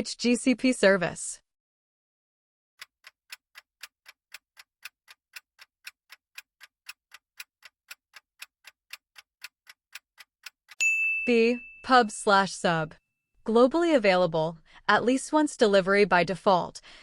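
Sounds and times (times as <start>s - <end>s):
clock ticking: 2.8s - 12.0s.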